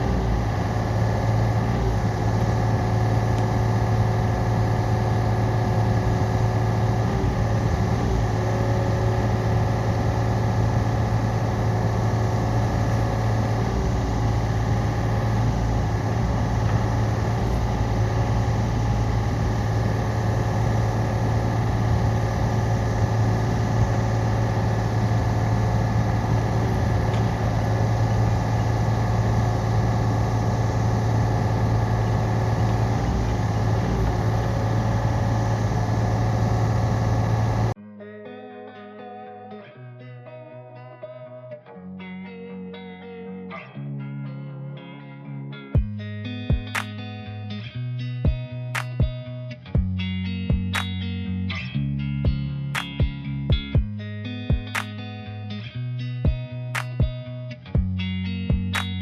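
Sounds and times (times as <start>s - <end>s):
excavator diesel engine running: 0.0s - 37.8s.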